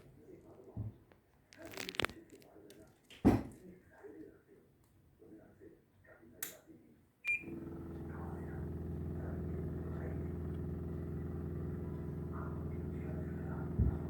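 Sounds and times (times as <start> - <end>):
low electrical hum: 7.2 - 14.0
air conditioner click: 7.3 - 14.0.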